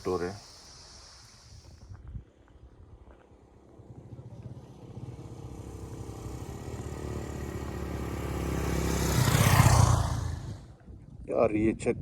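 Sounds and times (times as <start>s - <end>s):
vehicle engine passing by: 3.2s - 10.9s.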